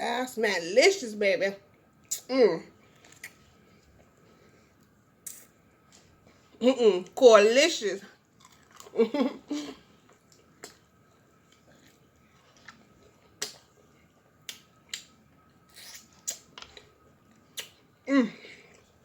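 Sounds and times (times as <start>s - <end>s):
crunching from chewing: 8.3s - 9.0s, 10.0s - 17.9s
wet mouth smacks: 13.4s - 13.7s, 14.4s - 15.1s, 15.8s - 16.5s, 17.5s - 17.8s.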